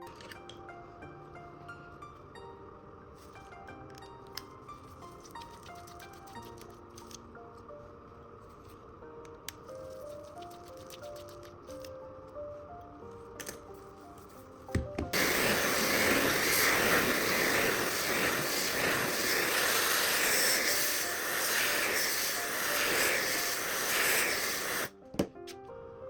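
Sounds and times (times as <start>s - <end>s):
electric blower hissing: 15.1s - 25.0s.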